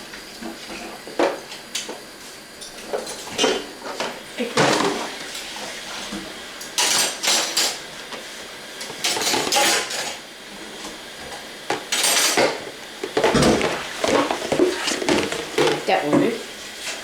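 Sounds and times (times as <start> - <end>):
dishes and cutlery clattering: 6.8 - 7.8, 9.0 - 10.2, 11.9 - 12.6.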